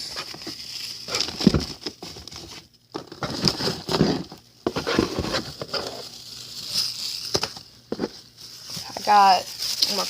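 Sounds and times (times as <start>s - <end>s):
packaging rustling and crinkling: 0.0s - 10.0s.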